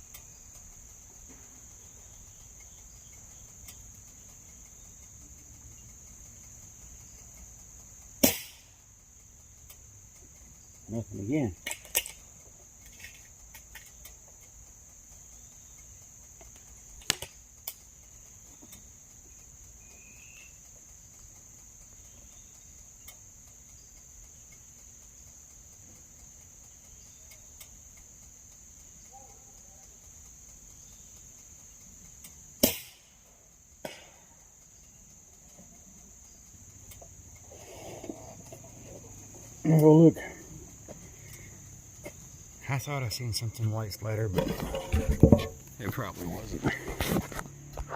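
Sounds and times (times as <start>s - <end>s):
insects droning: 0.0s - 47.9s
air rifle shot: 8.2s - 8.7s, 32.6s - 33.1s, 33.8s - 34.2s
faint clicks: 11.6s - 43.7s.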